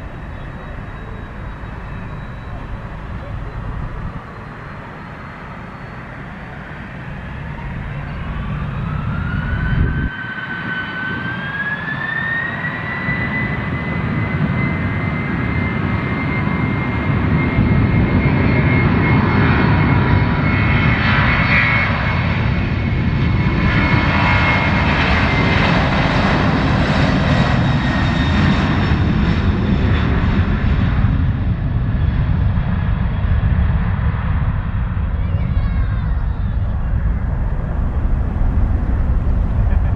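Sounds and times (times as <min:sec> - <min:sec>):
jet engines spooling up: 0:00.0 - 0:20.2, 0:36.2 - 0:39.9.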